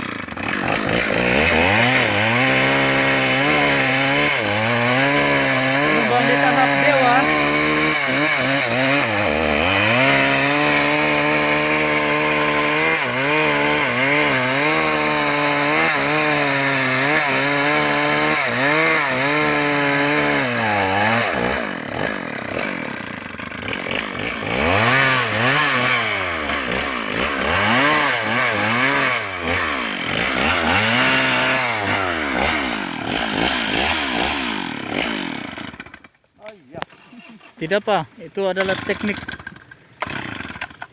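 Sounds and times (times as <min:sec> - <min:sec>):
chainsaw cutting wood: 0:00.0 - 0:40.9.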